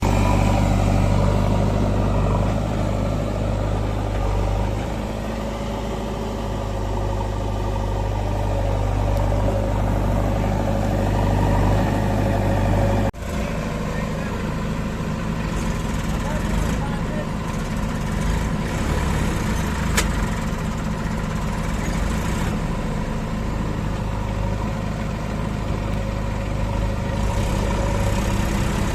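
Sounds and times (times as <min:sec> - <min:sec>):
diesel engine running steadily: 0:00.0 - 0:28.9.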